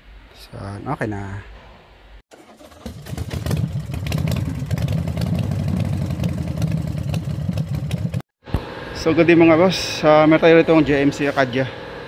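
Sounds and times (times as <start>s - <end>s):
car engine running: 2.8s - 8.2s.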